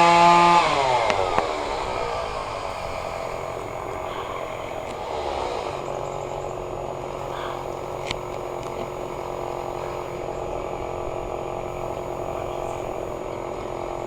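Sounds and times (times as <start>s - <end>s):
chainsaw engine running: 0.0s - 14.0s.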